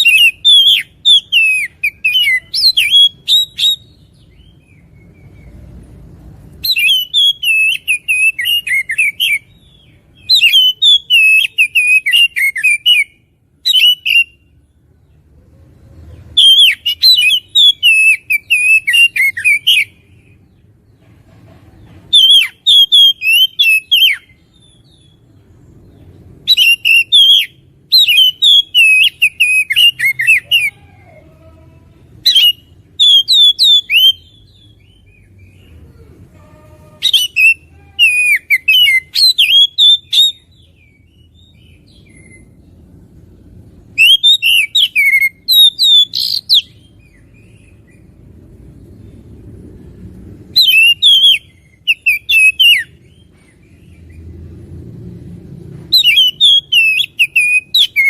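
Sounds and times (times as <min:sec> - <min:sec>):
bird singing whistled notes: 0:00.0 - 0:05.8, 0:06.6 - 0:14.6, 0:16.3 - 0:20.4, 0:22.1 - 0:30.8, 0:32.2 - 0:35.7, 0:36.8 - 0:42.8, 0:43.9 - 0:48.2, 0:50.5 - 0:54.3, 0:55.9 - 0:58.0.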